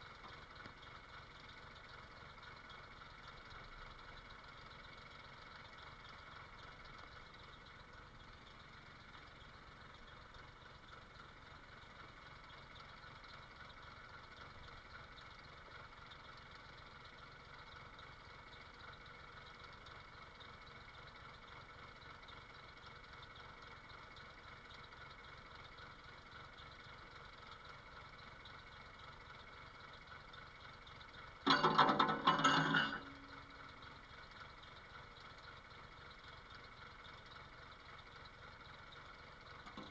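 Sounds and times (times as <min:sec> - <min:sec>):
engine idling: 0:00.0 - 0:39.9
jackhammer hammering: 0:31.5 - 0:33.2.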